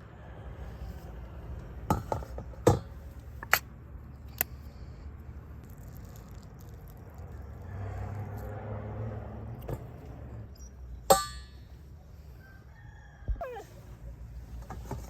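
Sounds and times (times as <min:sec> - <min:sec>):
sharp metallic clang: 0:11.0 - 0:11.8
rooster crowing: 0:12.4 - 0:13.8.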